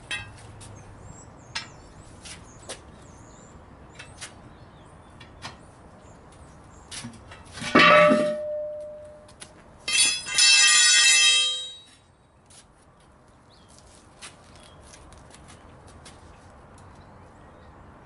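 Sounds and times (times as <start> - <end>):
steel striking steel clang: 7.7 - 9.3, 9.9 - 11.9.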